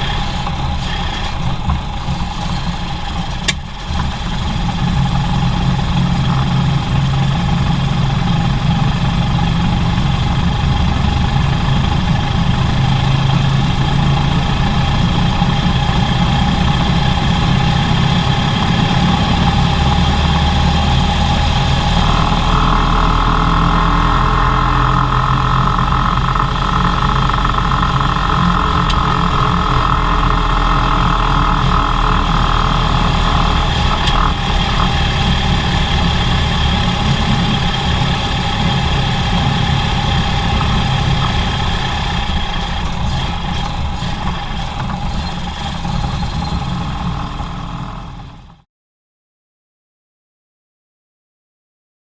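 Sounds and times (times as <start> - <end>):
car engine running: 0.0 - 48.6
engine pop: 3.3 - 4.4.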